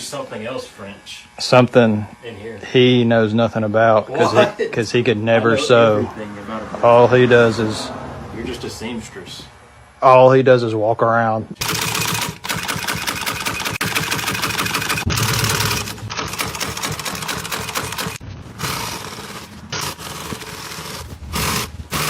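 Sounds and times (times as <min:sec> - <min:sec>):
sewing machine stitching: 0:11.6 - 0:22.0.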